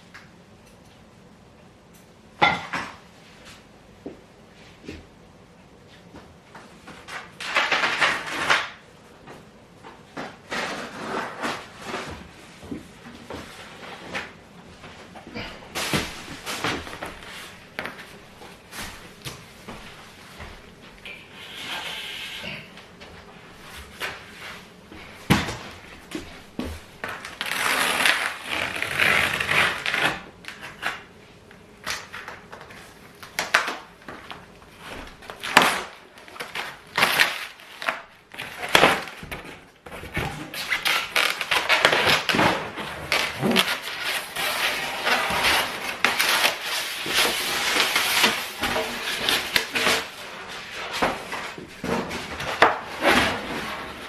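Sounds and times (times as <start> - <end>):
scraping and rustling: 36.4 - 54.0.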